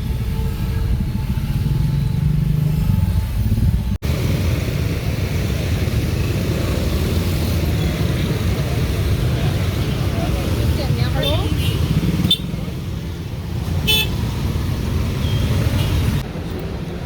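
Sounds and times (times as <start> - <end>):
road noise: 0.0 - 17.0
vehicle running rumble: 0.0 - 17.0.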